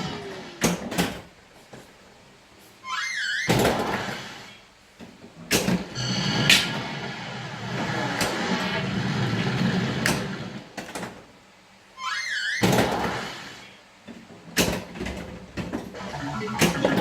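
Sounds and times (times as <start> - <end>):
warbling electronic beep: 16.0 - 17.0.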